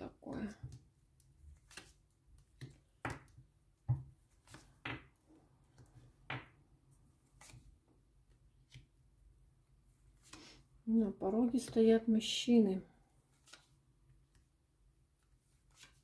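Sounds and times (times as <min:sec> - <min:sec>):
cards slapping and rustling: 0:01.5 - 0:03.4, 0:13.3 - 0:13.8, 0:15.4 - 0:16.0.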